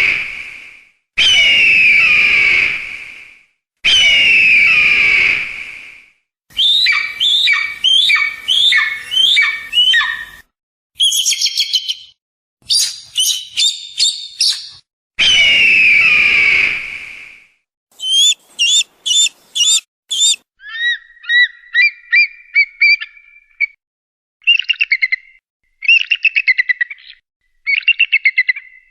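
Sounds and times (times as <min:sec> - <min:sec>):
kite whistling calls: 0:06.5 - 0:11.5, 0:18.0 - 0:20.4
bird trills: 0:06.6 - 0:10.4, 0:12.7 - 0:14.8, 0:18.0 - 0:23.8.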